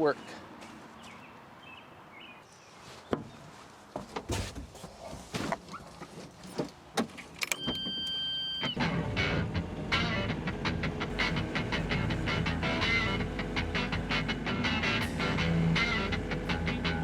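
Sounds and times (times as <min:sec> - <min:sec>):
low engine rumble: 0:04.0 - 0:17.0
clunks and clicks of controls: 0:06.4 - 0:09.0
electronic warning beep: 0:07.5 - 0:08.8.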